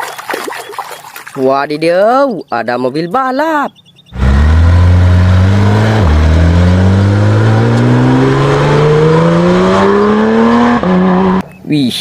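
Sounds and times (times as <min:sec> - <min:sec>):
race car engine accelerating: 0:04.1 - 0:11.4.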